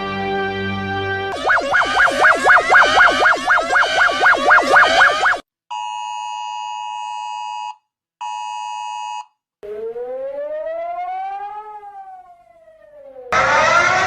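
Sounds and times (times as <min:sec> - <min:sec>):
buzzing alert tones: 0:01.3 - 0:05.4
siren wail: 0:01.3 - 0:05.4, 0:09.6 - 0:14.0.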